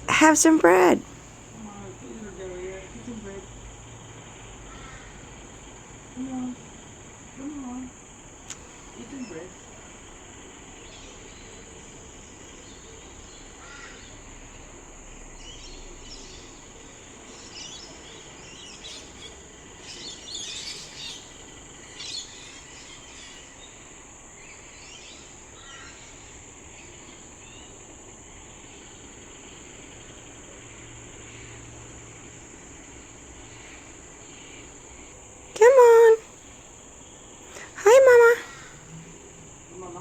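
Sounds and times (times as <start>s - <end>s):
high insect drone: 0.0s - 40.0s
birds calling: 4.4s - 5.9s, 15.4s - 27.8s.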